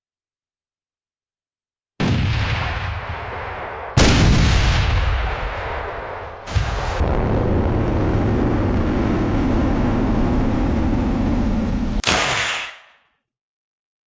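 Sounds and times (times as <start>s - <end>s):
dense rumbling noise: 3.3s - 12.0s.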